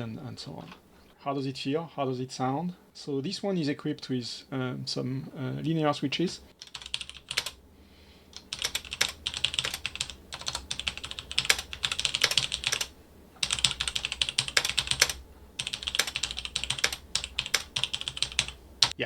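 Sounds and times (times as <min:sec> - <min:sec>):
typing on mechanical keyboard: 0:06.6 - 0:07.6, 0:08.3 - 0:19.0.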